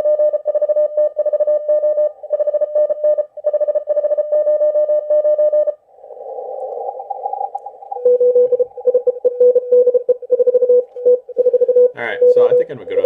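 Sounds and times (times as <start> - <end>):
morse code tone: 7.9 - 13.0.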